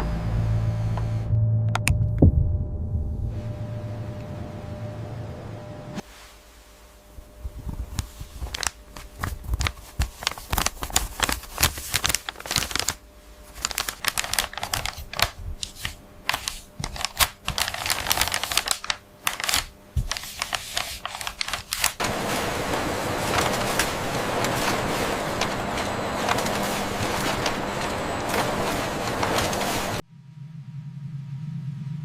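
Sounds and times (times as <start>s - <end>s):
steady hiss: 20.1s - 30.0s.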